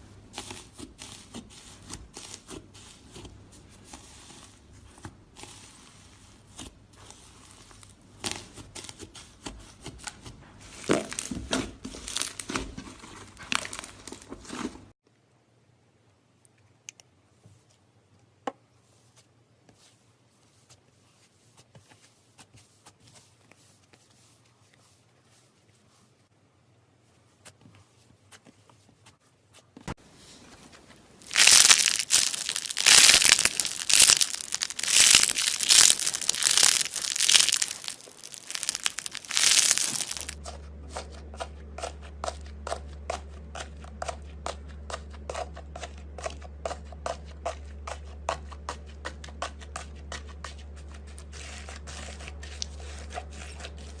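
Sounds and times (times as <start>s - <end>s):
slime crunching and crackling: 10.6s - 14.6s, 31.2s - 40.4s.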